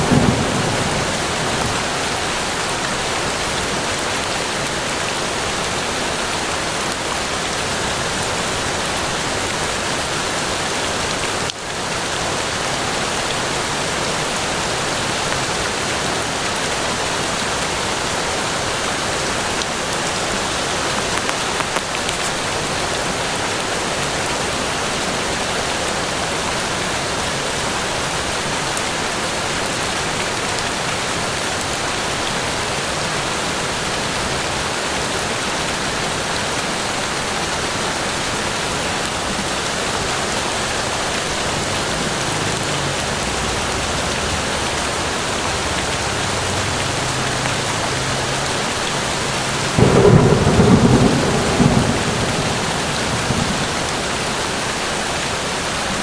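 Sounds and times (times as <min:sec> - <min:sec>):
thunder rumbling and cracking: 0:00.0 - 0:03.9, 0:47.6 - 0:55.0
rain falling in forest: 0:00.0 - 0:56.0.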